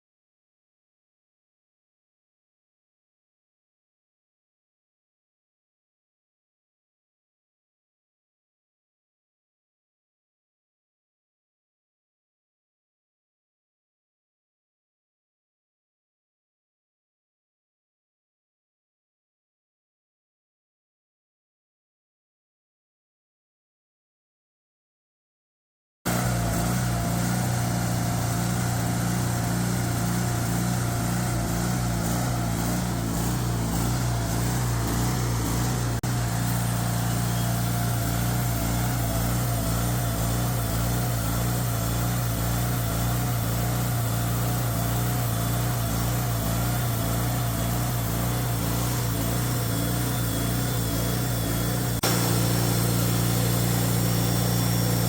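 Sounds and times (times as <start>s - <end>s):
saw cutting log: 26.1s - 55.0s
sawmill engine running: 26.1s - 55.0s.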